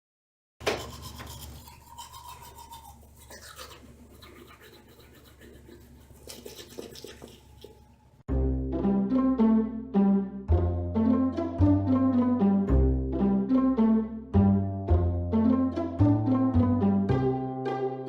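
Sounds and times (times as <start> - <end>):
rubbing and scraping strokes: 0.6 - 7.9.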